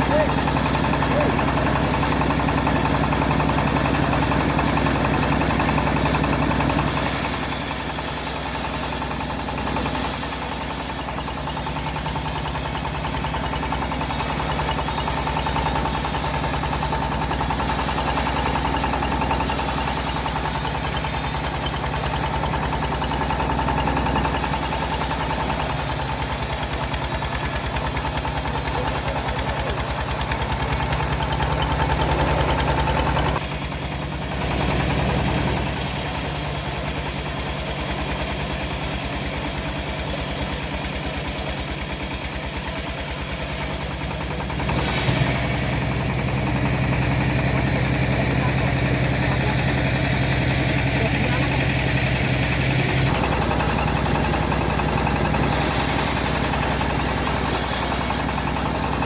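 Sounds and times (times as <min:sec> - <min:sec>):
bandsaw engine running: 0:00.0 - 0:59.0
saw blade cutting wood: 0:00.0 - 0:59.0.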